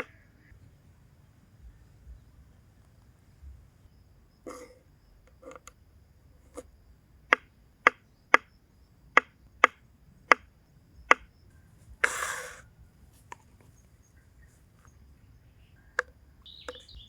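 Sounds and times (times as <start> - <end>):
brief rush of hissing: 12.0 - 12.7.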